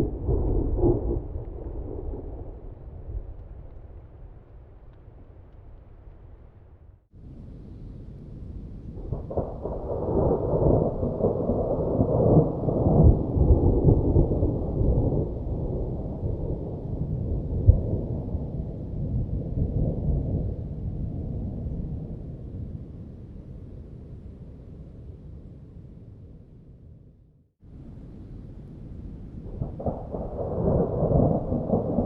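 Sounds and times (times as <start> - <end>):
sharp thunder crack: 0.0 - 3.9, 9.0 - 18.8, 29.4 - 32.0
thunder rumbling: 0.0 - 26.8, 27.8 - 32.0.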